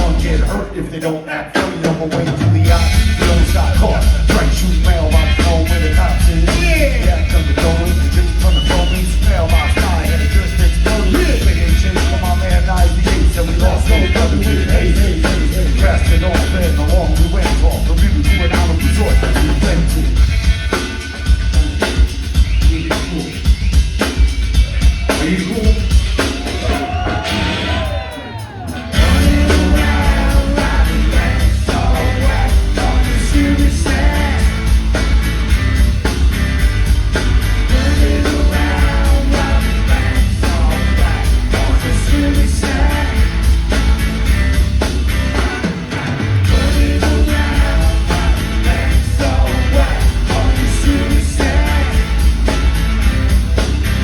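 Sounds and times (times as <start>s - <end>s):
person singing: 0.0s - 20.0s, 26.4s - 34.8s, 37.6s - 43.6s, 45.4s - 52.4s
live rock band playing: 0.0s - 54.0s.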